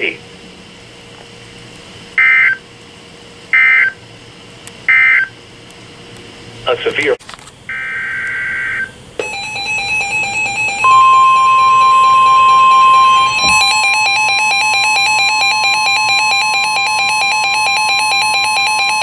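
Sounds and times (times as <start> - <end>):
weather radio warning alarm tone: 7.7 - 19.0
rapid pulsing beeps: 9.2 - 19.0.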